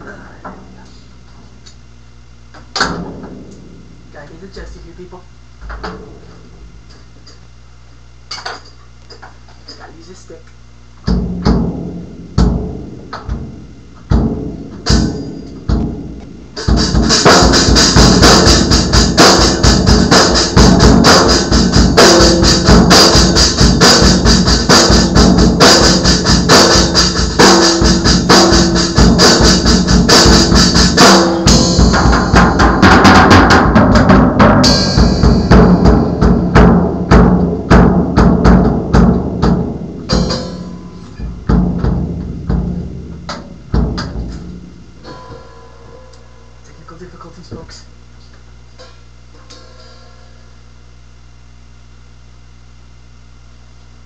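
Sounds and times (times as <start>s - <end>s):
drum kit beat: 2.6s - 5.0s, 10.9s - 46.8s
cymbals ringing: 14.8s - 15.6s, 39.8s - 41.5s, 44.2s - 46.9s.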